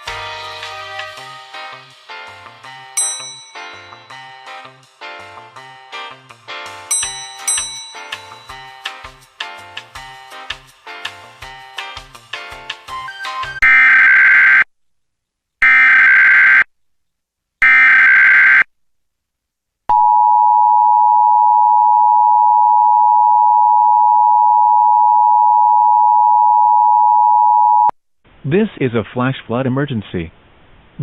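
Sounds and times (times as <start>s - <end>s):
music bed: 0.0s - 13.6s.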